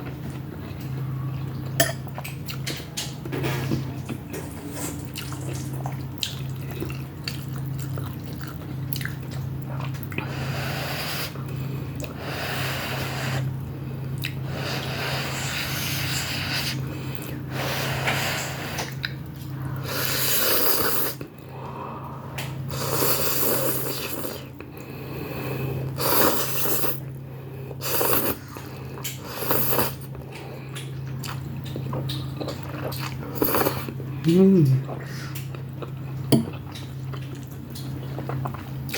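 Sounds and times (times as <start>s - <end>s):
steady low hum: 0.0s - 38.9s
quiet chewing: 3.7s - 10.3s, 27.8s - 34.1s, 34.8s - 38.9s.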